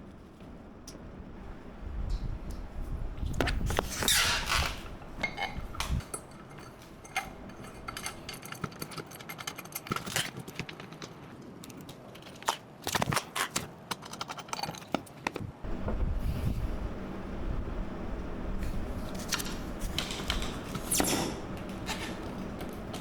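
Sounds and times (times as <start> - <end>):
metal chair parts clinking: 4.0 - 11.2.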